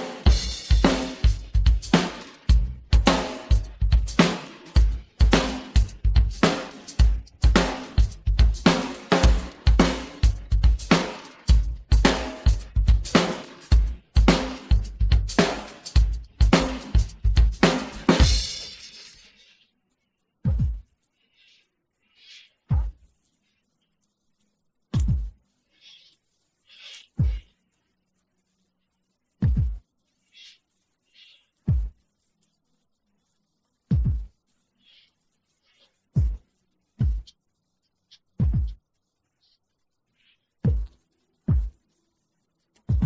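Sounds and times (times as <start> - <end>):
faint hissy cymbal wisps: 0.0 - 43.0
heavy low drum hits: 0.3 - 4.2, 7.0 - 10.9.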